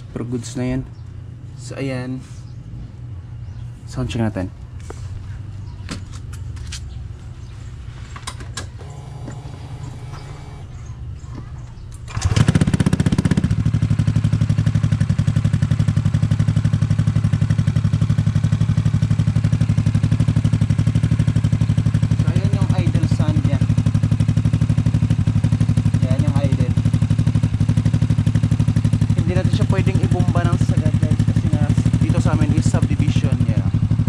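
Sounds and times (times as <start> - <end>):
scooter engine idling: 8.6 - 34.0.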